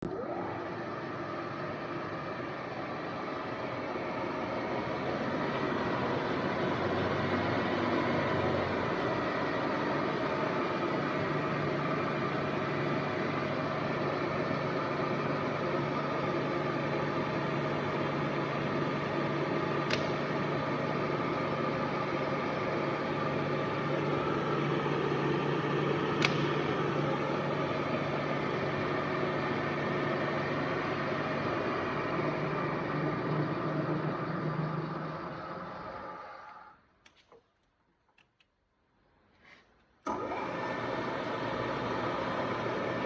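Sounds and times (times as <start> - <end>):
milling machine running: 0.0 - 36.7, 40.1 - 43.0
sharp clicks: 19.8 - 20.2, 26.2 - 26.7.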